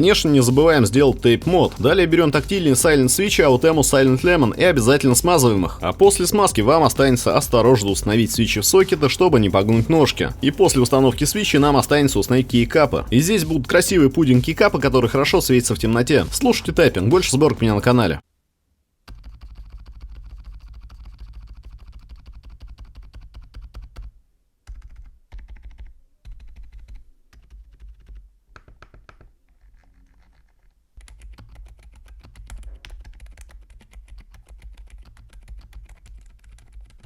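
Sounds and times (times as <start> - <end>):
muffled keyboard typing: 19.1 - 29.3, 31.0 - 37.0.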